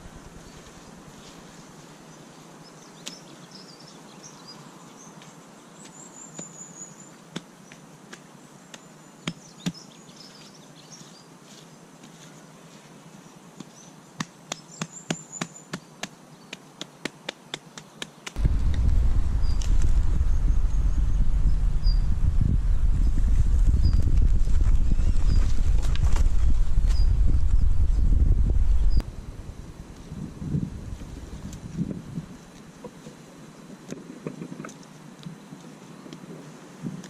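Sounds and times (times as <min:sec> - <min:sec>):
high chirping trills: 0:18.4 - 0:24.1.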